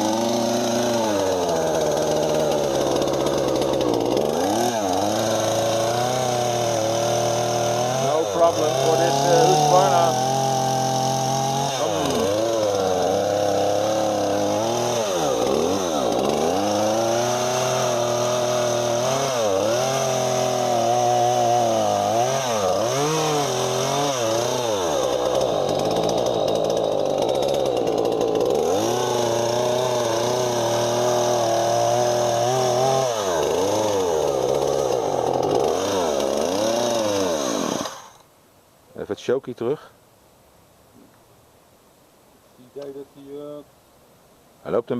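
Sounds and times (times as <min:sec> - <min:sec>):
chainsaw engine revving: 0:00.0 - 0:38.2.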